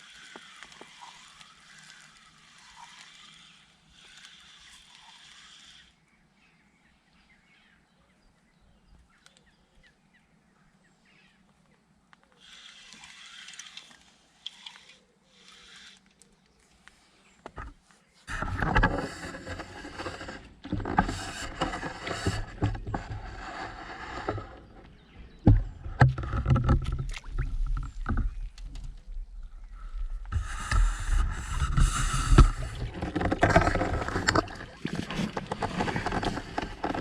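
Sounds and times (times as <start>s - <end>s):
water splashing and sloshing: 17.6s - 37.0s.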